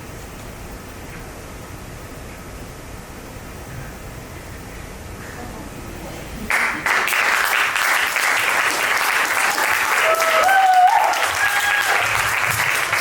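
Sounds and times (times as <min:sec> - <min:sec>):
audience applause: 0:06.5 - 0:13.0
high whoop: 0:09.4 - 0:12.5.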